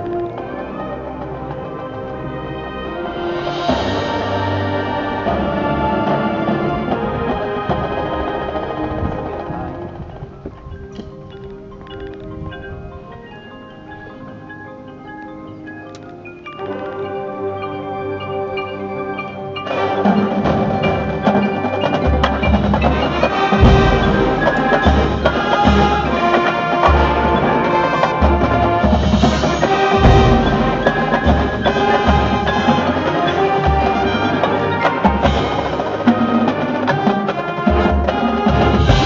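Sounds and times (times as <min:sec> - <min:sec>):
marching band playing: 0:00.0 - 0:10.4, 0:16.5 - 0:39.0
mallet percussion chords: 0:10.1 - 0:39.0.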